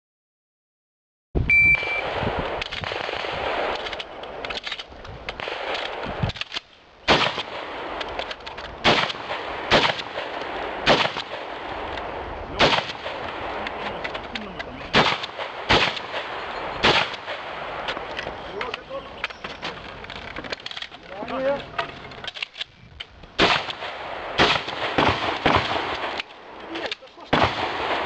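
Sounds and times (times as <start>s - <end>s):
shot timer beep: 1.5s - 2.0s
shotgun shots: 2.0s - 4.8s, 5.4s - 14.0s, 14.9s - 18.1s, 23.4s - 28.0s.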